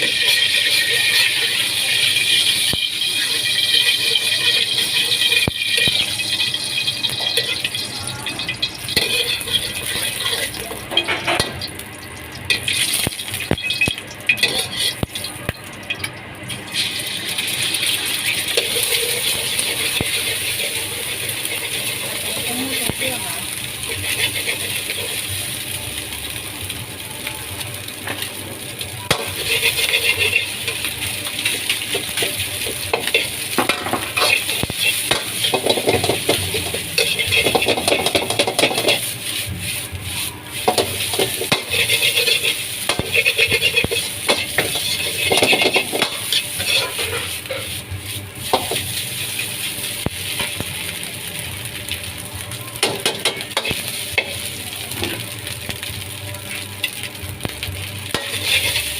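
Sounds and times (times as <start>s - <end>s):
metal spatula scraping a wok: 0.0s - 7.9s, 8.7s - 11.5s, 13.7s - 15.1s, 17.8s - 23.2s, 23.8s - 25.3s, 29.1s - 50.6s, 57.6s - 58.9s
metal clanking on a wok: 0.0s - 16.1s, 17.7s - 25.6s, 27.6s - 50.7s, 52.8s - 58.9s
rice sizzling in a wok: 0.0s - 58.9s.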